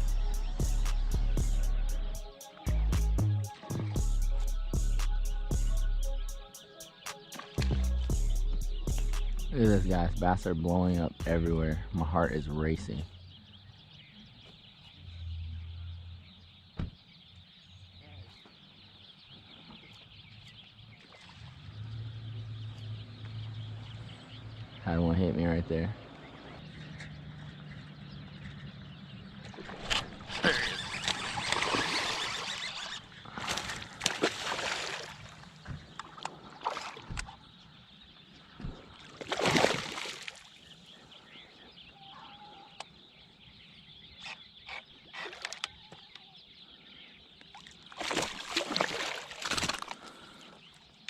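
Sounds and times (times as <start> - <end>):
water splashing: 29.4 - 37.2, 38.7 - 40.7, 47.6 - 50.4.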